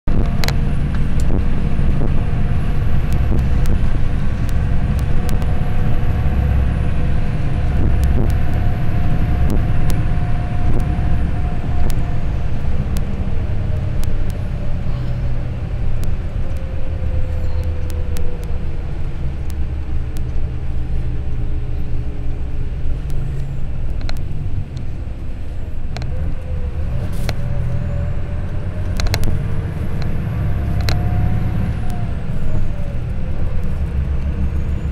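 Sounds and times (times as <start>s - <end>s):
bus engine and road rumble: 0.0s - 34.9s
sharp clicks: 2.9s - 6.1s, 15.9s - 21.5s, 22.2s - 24.9s, 28.4s - 32.0s.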